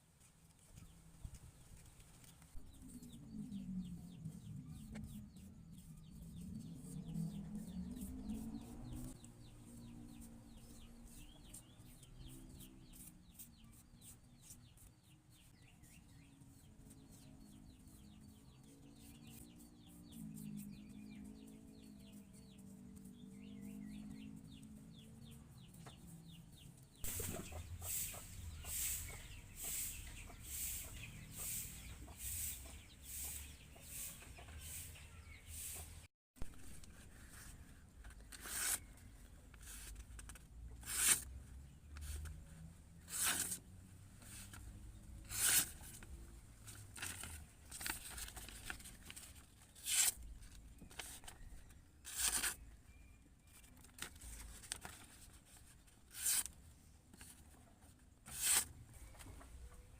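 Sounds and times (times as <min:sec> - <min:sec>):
faint chickens clucking: 0:27.1 - 0:36.1.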